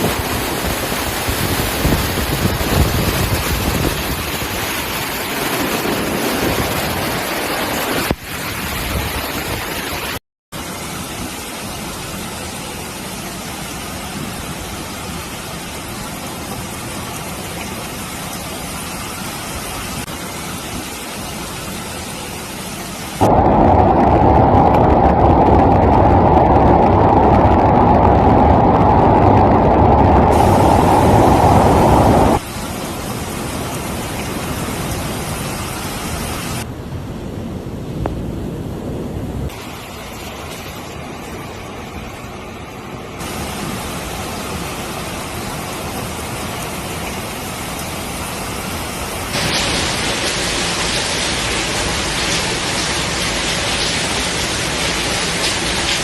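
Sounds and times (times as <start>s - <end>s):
storm wind and heavy rain: 0.0s - 56.0s.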